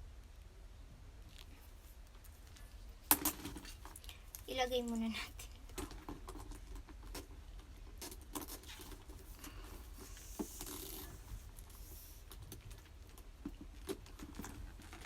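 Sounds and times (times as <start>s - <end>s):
handbag rustle: 8.0s - 12.7s.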